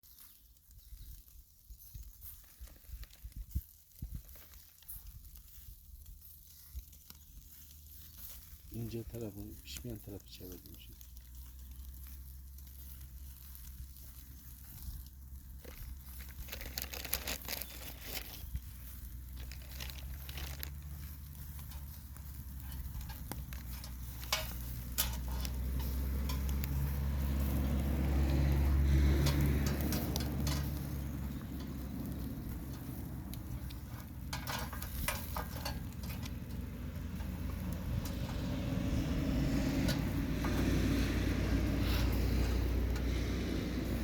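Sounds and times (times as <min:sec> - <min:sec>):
meat sizzling: 0:00.0 - 0:44.0
pops and crackles: 0:00.0 - 0:44.0
low rumble: 0:12.3 - 0:44.0.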